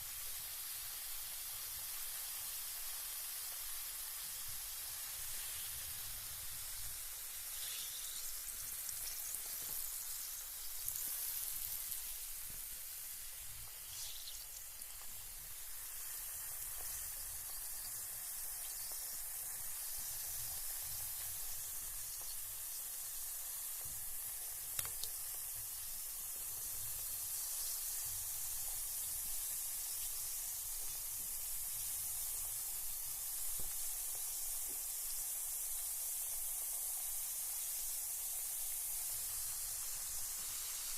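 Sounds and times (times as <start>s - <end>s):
bath bomb fizzing: 2.8s - 36.5s
faint pops and ticks: 24.7s - 25.2s.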